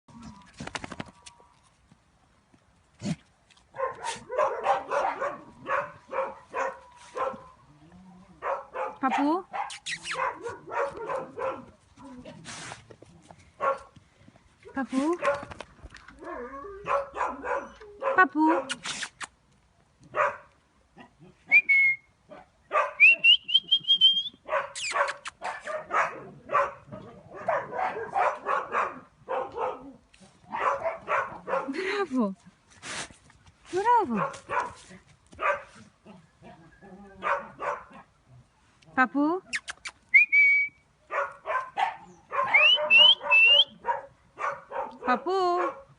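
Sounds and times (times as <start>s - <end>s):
dog barking: 3.8s - 7.6s, 8.4s - 11.7s, 13.6s - 13.9s, 16.8s - 18.7s, 20.1s - 20.5s, 22.3s - 23.0s, 24.5s - 31.8s, 34.2s - 34.8s, 35.4s - 35.8s, 37.2s - 38.1s, 41.1s - 45.9s
person whistling: 21.5s - 22.0s, 23.0s - 24.4s, 40.1s - 40.8s, 42.6s - 43.7s.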